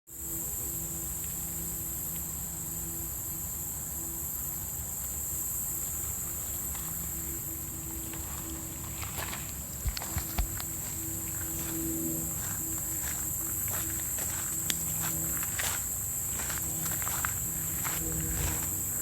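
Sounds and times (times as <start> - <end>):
faint low hum: 0.1 - 19.0
insects chirping: 0.1 - 19.0.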